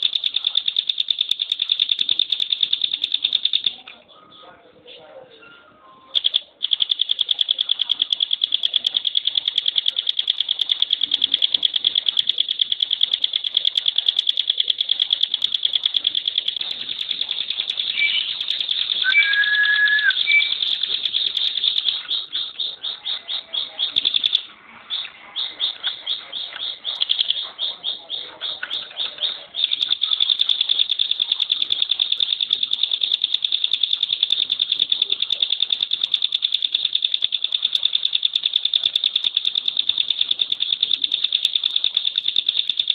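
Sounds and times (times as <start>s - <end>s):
songbird rattling trill: 0.0s - 3.9s, 6.1s - 42.9s
short lower whistle: 19.0s - 20.5s.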